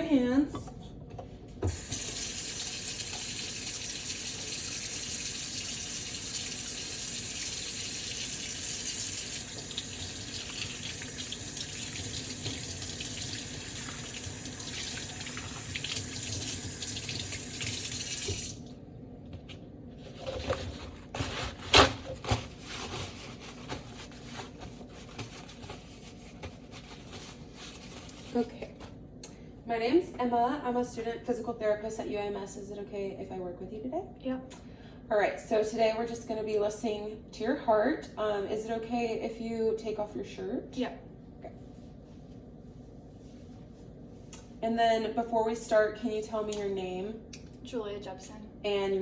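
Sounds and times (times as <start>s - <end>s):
tap water running into sink: 1.6s - 18.6s.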